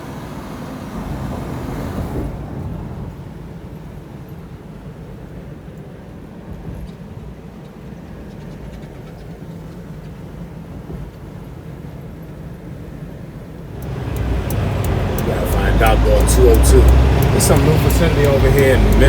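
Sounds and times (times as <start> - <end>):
road noise: 0.0 - 5.5, 12.7 - 19.0
truck engine rumble: 13.7 - 19.0.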